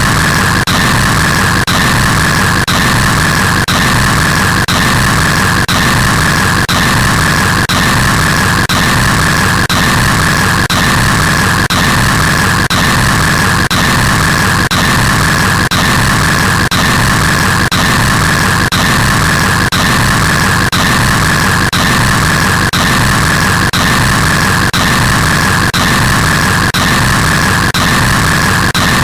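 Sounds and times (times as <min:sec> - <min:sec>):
loud harsh static hiss: 0:00.0 - 0:12.6, 0:14.2 - 0:24.6.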